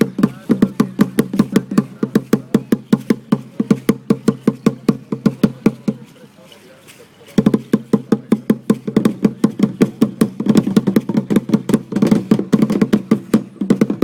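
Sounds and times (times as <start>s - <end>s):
drum beaten fast: 0.0s - 6.1s, 7.4s - 14.0s.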